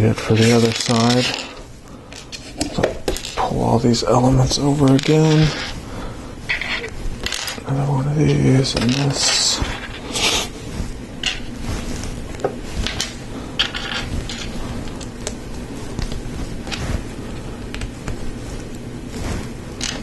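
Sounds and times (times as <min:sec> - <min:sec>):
parts rattling: 0:00.0 - 0:05.8, 0:06.4 - 0:10.5, 0:11.2 - 0:15.4, 0:19.8 - 0:20.0
low background hum: 0:00.0 - 0:20.0.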